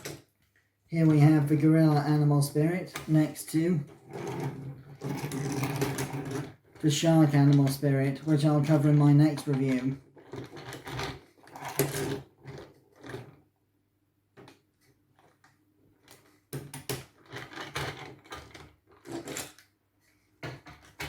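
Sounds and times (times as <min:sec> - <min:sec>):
plastic toys clattering: 0:02.9 - 0:13.4, 0:16.0 - 0:19.7.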